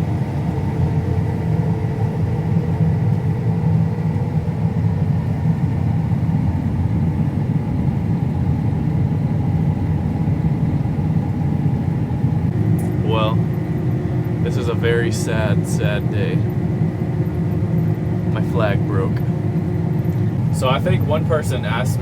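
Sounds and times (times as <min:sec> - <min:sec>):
combine harvester engine rumble: 0:00.0 - 0:22.0
faint high whine: 0:12.5 - 0:22.0.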